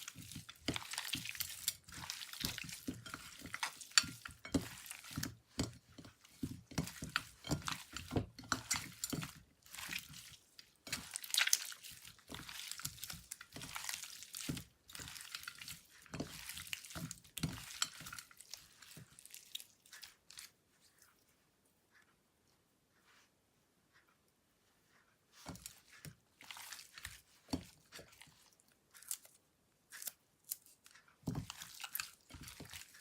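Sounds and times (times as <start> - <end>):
slime being squished: 6.4 - 20.4.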